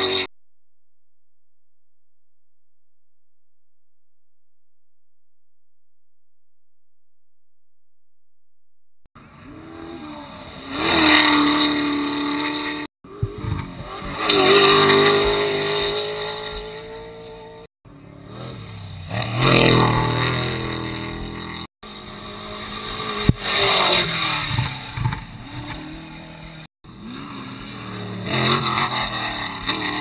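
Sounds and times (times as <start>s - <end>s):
race truck engines revving: 9.2s - 30.0s.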